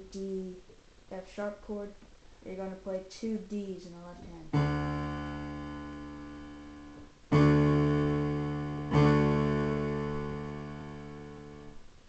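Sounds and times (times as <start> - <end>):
piano chord ringing: 4.6 - 11.8.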